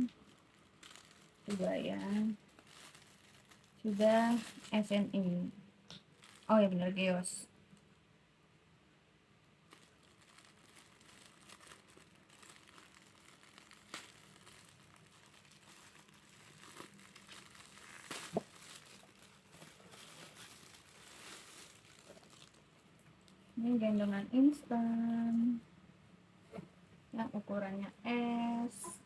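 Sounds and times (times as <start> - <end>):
plastic packaging crinkling: 0.0 - 5.2, 5.9 - 7.1, 9.6 - 23.4.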